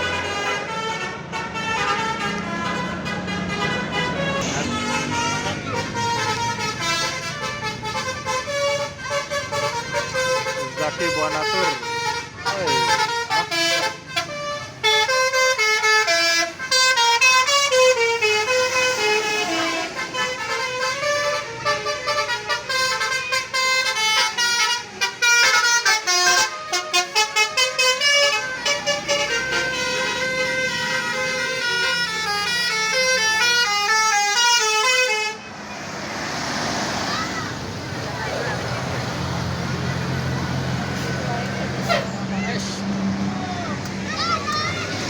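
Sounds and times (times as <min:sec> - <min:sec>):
multi-tone air horns melody: 0:00.0 - 0:35.4.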